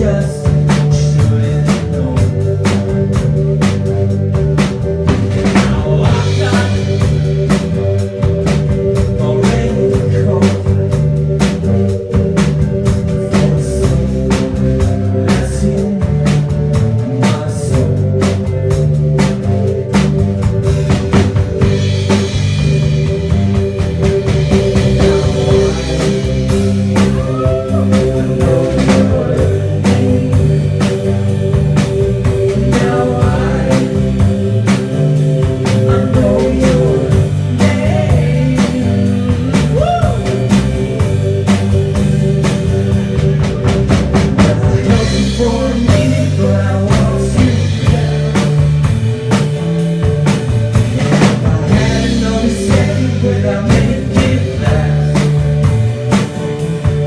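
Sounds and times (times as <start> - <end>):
bass line: 0.0 - 57.0
drum kit beat: 0.0 - 57.0
sustained keyboard chords: 0.0 - 57.0
electric guitar: 15.8 - 57.0.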